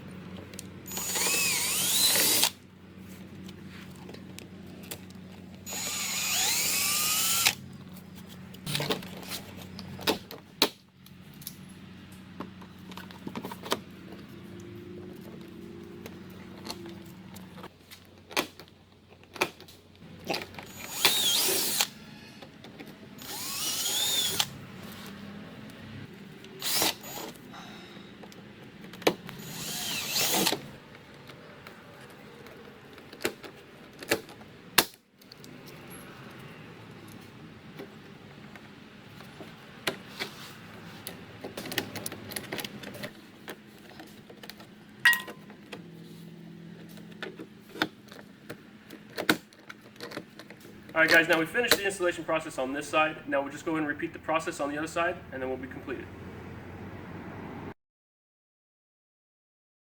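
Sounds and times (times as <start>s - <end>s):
power drill whining: 0.9s - 2.6s, 5.6s - 7.6s, 20.6s - 22.4s, 23.2s - 24.6s, 26.6s - 27.4s, 29.4s - 30.7s.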